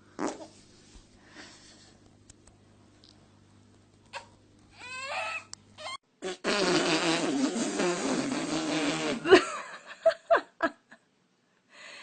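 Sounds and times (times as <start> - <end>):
fart: 0.2 - 0.5, 6.2 - 9.4.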